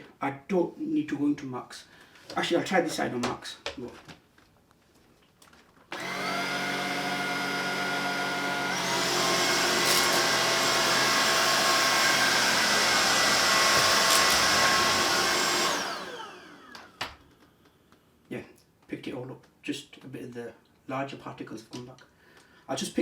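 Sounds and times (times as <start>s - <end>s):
vacuum cleaner motor whine: 5.9s - 17.2s.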